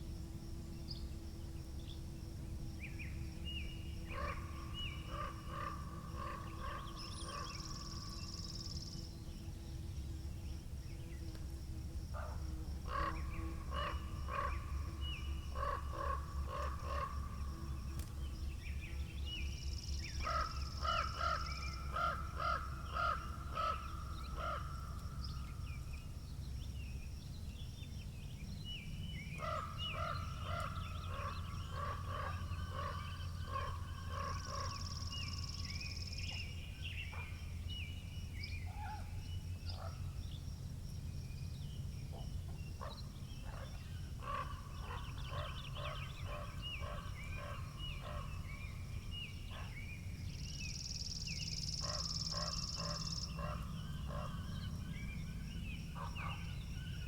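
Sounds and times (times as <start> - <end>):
birds chirping: 41.7 - 57.0
bird harsh calls: 42.8 - 48.7
low wind rumble: 53.2 - 57.0.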